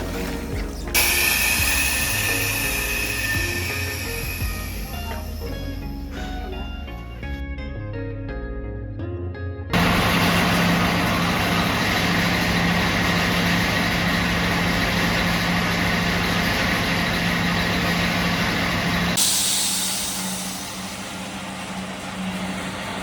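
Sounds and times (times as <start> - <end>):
compressed air rushing: 0.0 - 6.7, 18.9 - 23.0
low hum: 0.0 - 9.0.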